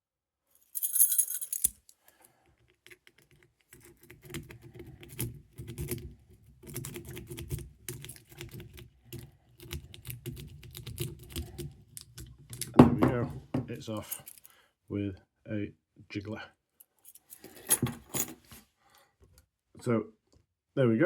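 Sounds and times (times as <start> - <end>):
key rattling in a lock: 0.8 - 1.9, 2.8 - 12.8, 14.0 - 14.5, 17.0 - 18.4.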